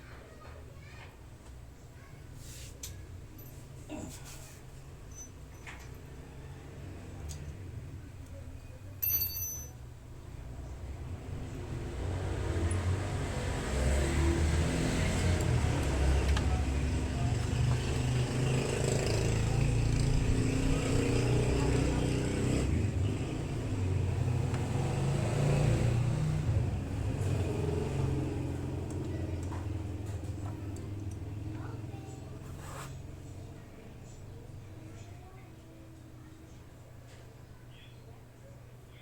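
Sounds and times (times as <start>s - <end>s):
vehicle engine droning: 10.4s - 35.0s.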